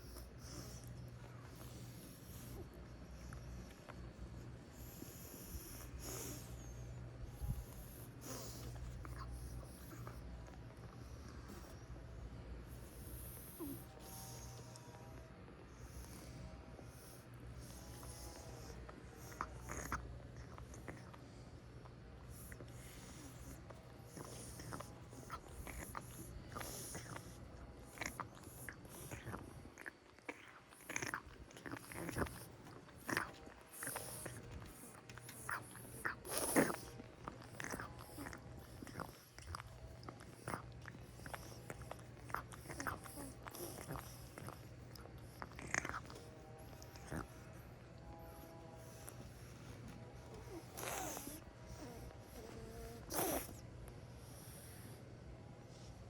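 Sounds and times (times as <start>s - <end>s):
cat purring: 0.0s - 55.1s
airy nasal breaths: 30.6s - 55.1s.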